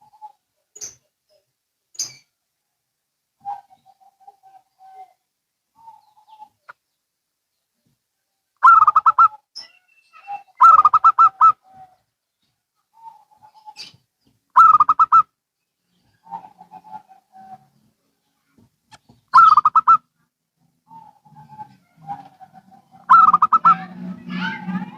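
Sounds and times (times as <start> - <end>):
doves cooing: 8.6 - 9.4, 10.3 - 12.0, 12.9 - 14.0, 14.6 - 15.2, 16.1 - 17.8, 19.3 - 20.0, 20.9 - 24.9.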